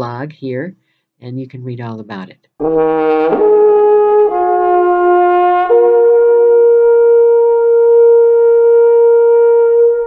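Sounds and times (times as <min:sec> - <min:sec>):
horn-like wind instrument melody: 0:02.6 - 0:10.0.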